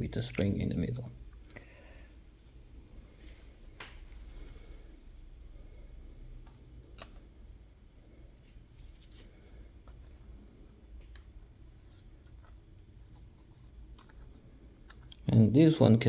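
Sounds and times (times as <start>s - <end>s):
lock parts clicking and scraping: 0.0s - 1.6s
low background hum: 0.0s - 16.0s.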